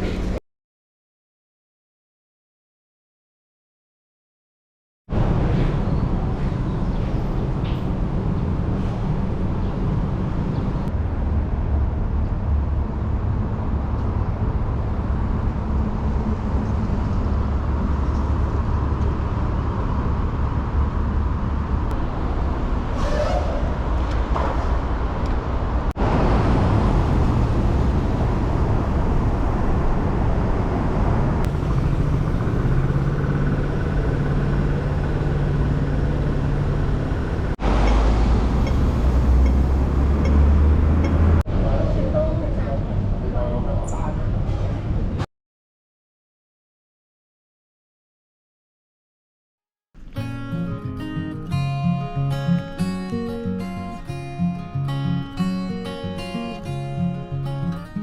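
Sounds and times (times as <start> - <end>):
engine running low rumble: 5.1 - 45.2.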